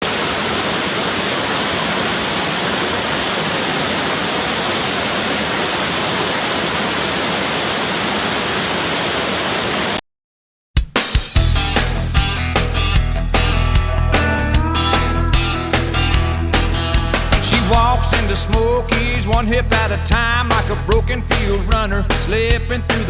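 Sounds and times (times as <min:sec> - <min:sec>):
falling water rushing: 0:00.0 - 0:10.0, 0:13.4 - 0:18.6.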